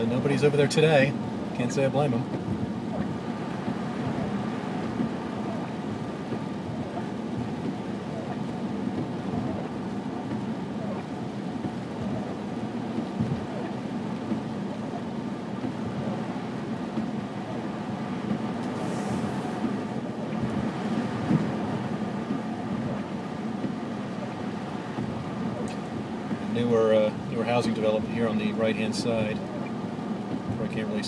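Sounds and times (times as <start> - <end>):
car road and engine noise: 0.0 - 31.0
brief hiss: 18.6 - 19.6.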